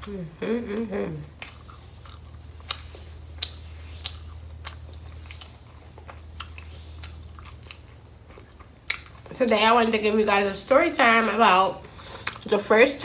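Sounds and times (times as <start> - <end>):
chewing crunchy food: 0.0 - 9.7, 11.8 - 12.6
steady low hum: 0.0 - 13.0.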